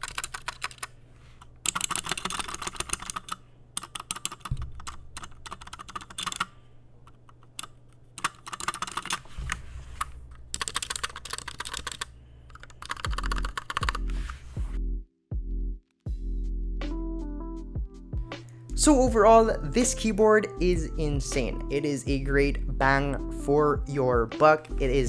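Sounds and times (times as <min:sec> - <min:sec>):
mechanical keyboard key clacks: 0:00.0 - 0:00.9, 0:01.7 - 0:06.5, 0:07.1 - 0:09.3, 0:10.4 - 0:14.0
background music with bass: 0:13.1 - 0:25.0.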